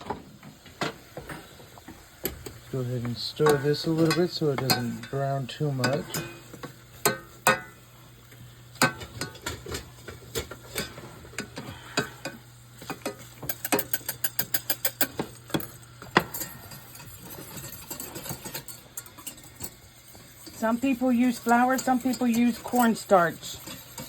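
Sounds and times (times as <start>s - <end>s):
utensil tapping a pan: 2.2s - 5.1s
utensil scraping a pan: 2.7s - 7.8s, 8.8s - 24.0s.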